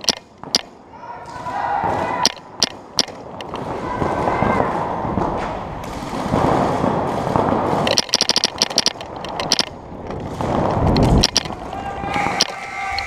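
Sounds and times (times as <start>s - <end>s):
paintball marker firing rapid shots: 2.2s - 12.6s.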